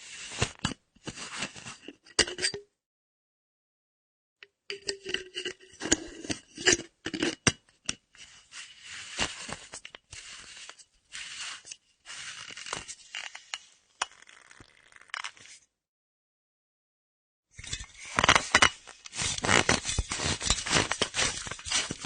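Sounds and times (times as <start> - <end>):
metal screw cap scraping and clicking: 0.5 - 2.7, 4.7 - 15.6, 17.6 - 22.0.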